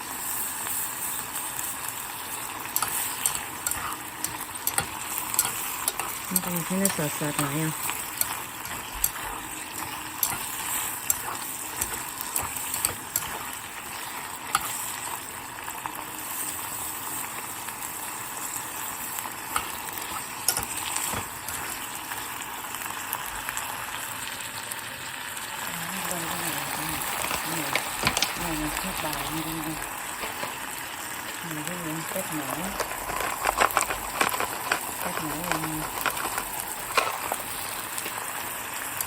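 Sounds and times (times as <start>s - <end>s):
meat sizzling in sauce: 0.0s - 39.0s
spoon scraping a pot: 2.6s - 15.0s, 19.5s - 21.9s, 32.6s - 37.7s.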